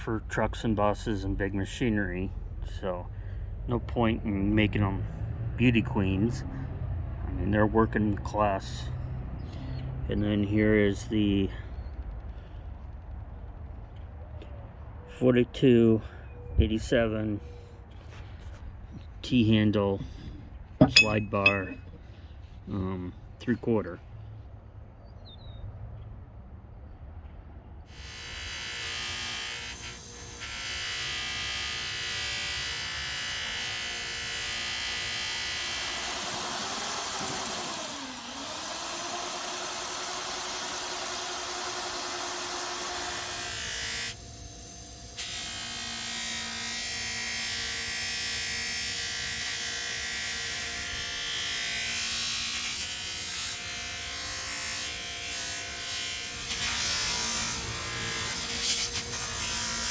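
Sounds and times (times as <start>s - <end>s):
bench motor whining: 28.7s - 47.8s.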